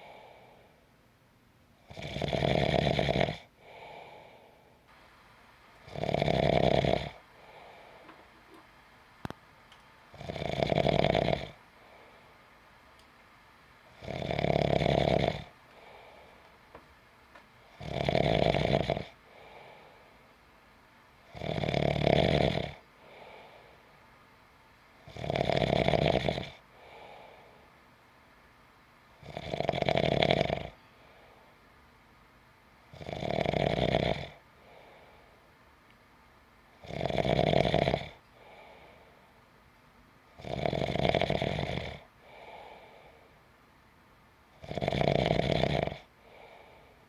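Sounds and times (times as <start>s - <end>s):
soft out-breath: 0.0s - 0.8s, 3.6s - 5.4s, 7.1s - 9.4s, 11.7s - 12.6s, 15.6s - 16.6s, 19.2s - 20.3s, 23.0s - 24.0s, 26.7s - 27.8s, 30.8s - 31.7s, 34.6s - 35.5s, 38.3s - 39.5s, 42.2s - 43.4s, 46.2s - 47.0s
person snoring: 1.9s - 4.4s, 5.8s - 8.7s, 10.1s - 12.3s, 13.9s - 16.4s, 17.7s - 20.0s, 21.3s - 23.7s, 25.1s - 27.3s, 29.2s - 30.8s, 33.0s - 35.0s, 36.8s - 38.8s, 40.4s - 43.0s, 44.6s - 46.8s.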